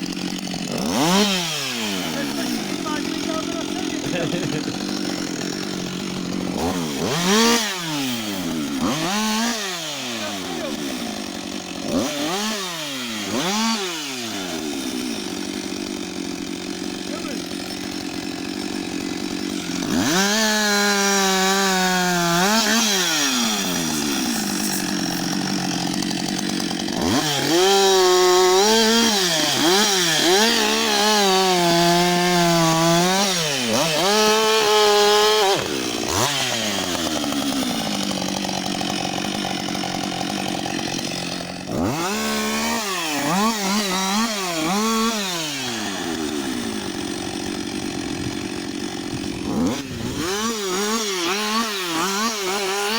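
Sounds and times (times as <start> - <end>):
chainsaw cutting wood: 0.0 - 52.9
chainsaw revving and idling: 0.0 - 52.9.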